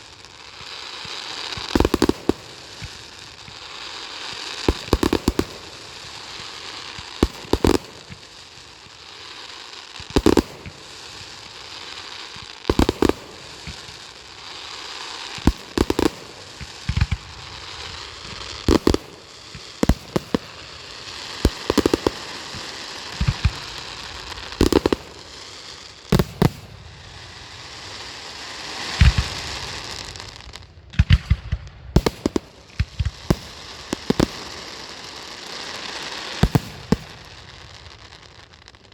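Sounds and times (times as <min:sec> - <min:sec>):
crackling hiss: 0:00.0 - 0:38.9
firework shells bursting: 0:04.3 - 0:06.1, 0:12.7 - 0:14.0, 0:15.4 - 0:27.2, 0:30.9 - 0:38.2.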